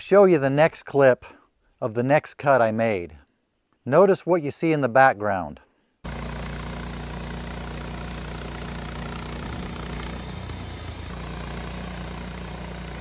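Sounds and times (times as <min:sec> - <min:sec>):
sawmill humming: 0:06.0 - 0:13.0.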